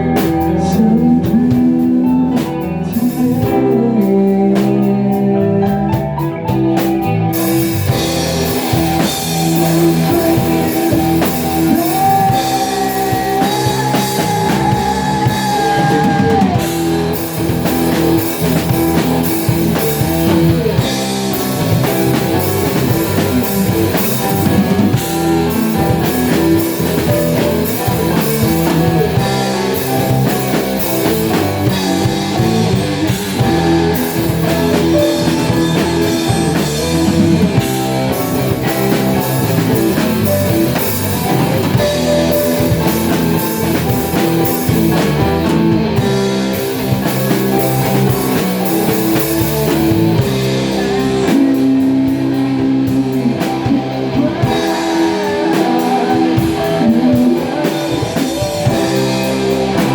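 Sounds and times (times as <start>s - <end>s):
rock band playing: 0.0s - 59.9s.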